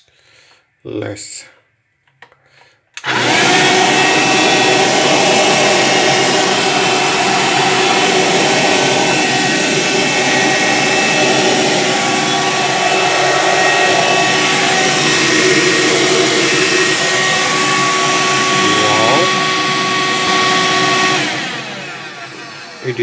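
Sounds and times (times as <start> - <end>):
handheld vacuum motor whining: 3.0 - 23.0.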